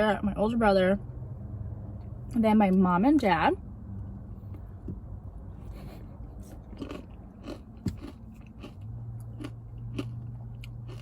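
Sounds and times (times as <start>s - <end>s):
low steady hum: 0.0s - 11.0s
person chewing crunchy food: 5.6s - 11.0s.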